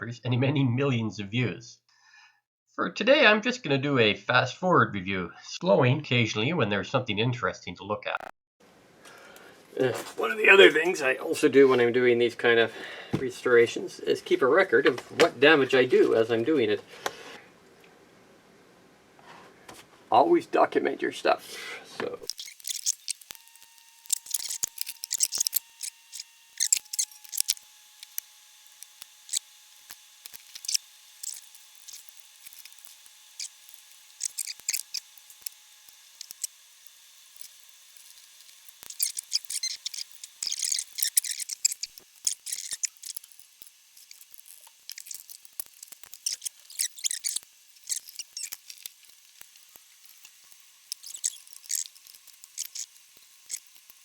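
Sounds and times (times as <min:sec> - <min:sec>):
hand tools clicking and scraping: 0:22.2 - 0:23.4, 0:24.0 - 0:36.6, 0:37.3 - 0:54.0.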